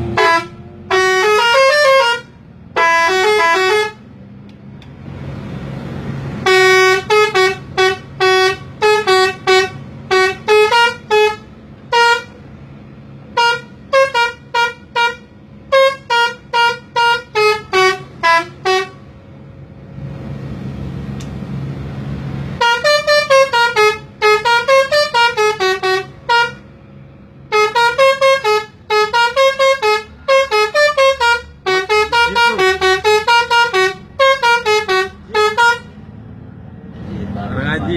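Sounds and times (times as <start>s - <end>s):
bus musical multi-tone horn: 0.0s - 4.2s, 6.1s - 19.2s, 22.2s - 36.4s
low engine hum: 0.0s - 37.9s
short horn toots: 27.5s - 35.9s.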